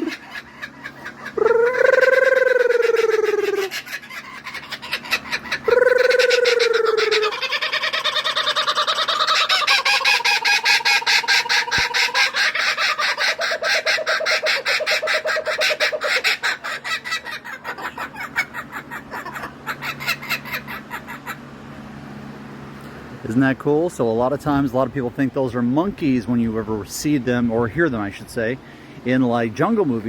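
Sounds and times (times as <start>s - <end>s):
kookaburras laughing chorus: 0.0s - 21.6s.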